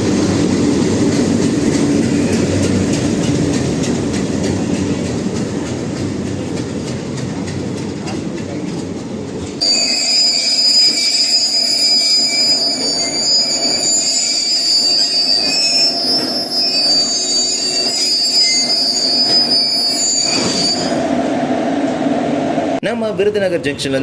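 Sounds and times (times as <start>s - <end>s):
train wheels squealing on rails: 0.0s - 5.6s, 9.6s - 21.2s
rumble of train coaches: 0.0s - 24.0s.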